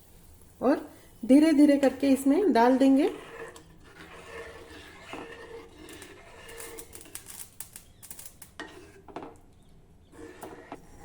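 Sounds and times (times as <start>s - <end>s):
faint clicks and scrapes of pan: 2.8s - 11.0s.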